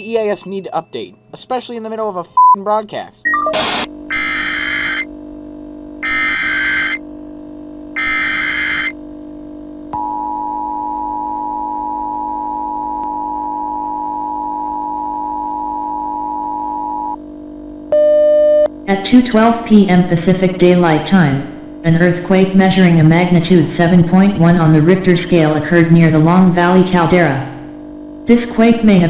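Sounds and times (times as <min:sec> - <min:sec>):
two-tone attention signal: 0:03.3 - 0:05.1, 0:06.0 - 0:07.0, 0:08.0 - 0:09.0
harsh data bursts: 0:03.5 - 0:05.1, 0:06.0 - 0:07.0, 0:08.0 - 0:08.9.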